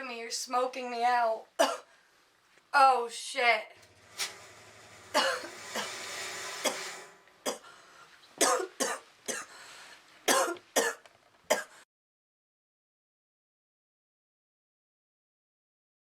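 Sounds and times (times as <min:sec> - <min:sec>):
woman coughing harshly: 0:01.6 - 0:01.9, 0:05.2 - 0:06.0, 0:06.6 - 0:07.7, 0:08.4 - 0:09.5, 0:10.3 - 0:11.8
steady hiss: 0:03.8 - 0:10.3.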